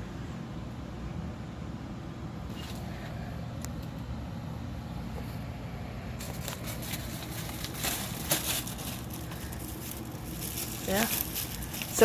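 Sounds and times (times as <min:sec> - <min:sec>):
dehumidifier fan humming: 0:00.0 - 0:12.0
clicks and rustles: 0:06.2 - 0:12.0.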